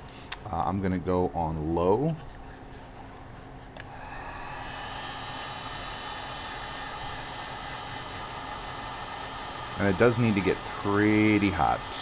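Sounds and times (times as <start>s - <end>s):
heat gun fan whirring: 3.1s - 12.0s.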